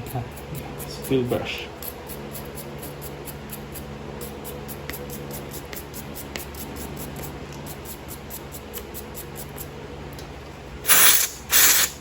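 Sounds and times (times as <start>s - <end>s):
wire brush scrubbing spark plug: 10.9s - 12.0s.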